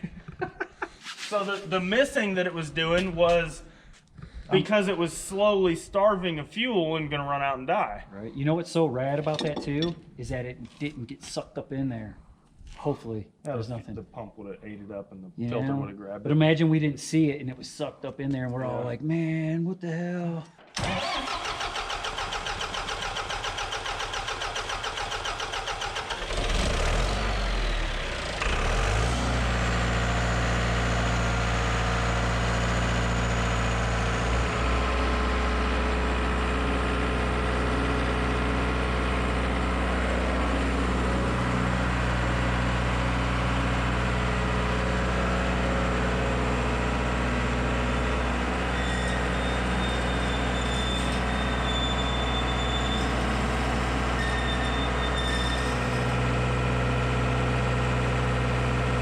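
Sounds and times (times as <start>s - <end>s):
diesel engine cranking and idling: 20.6s - 59.0s.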